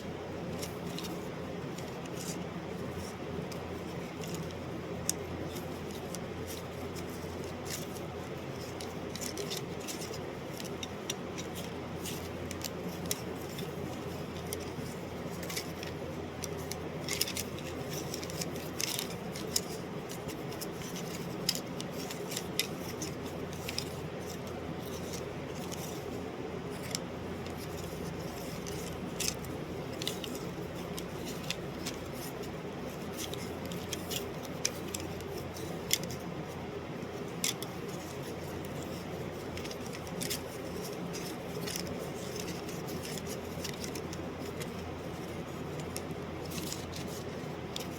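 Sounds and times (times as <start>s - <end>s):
steady low hum: 0.0s - 47.9s.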